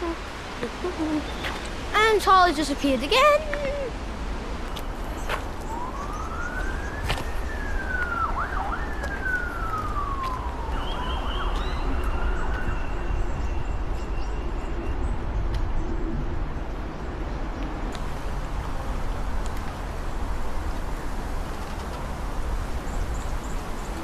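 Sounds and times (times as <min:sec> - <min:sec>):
emergency siren wailing: 0:05.6 - 0:13.0.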